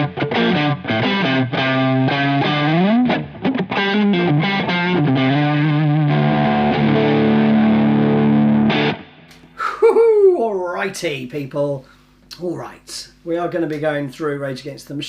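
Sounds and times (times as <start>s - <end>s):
distorted electric guitar riff: 0.0s - 9.6s.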